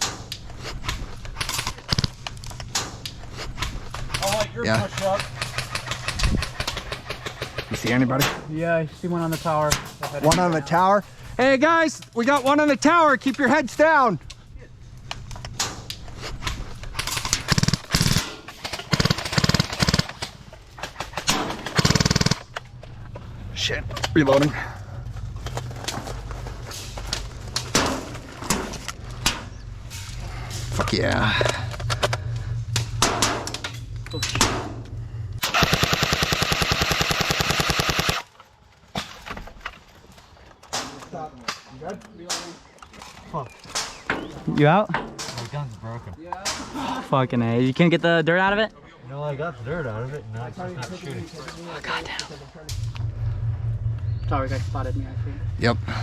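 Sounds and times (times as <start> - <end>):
airsoft rifle full-auto bursts: 17.4 - 20.2, 21.6 - 22.4, 35.4 - 38.3.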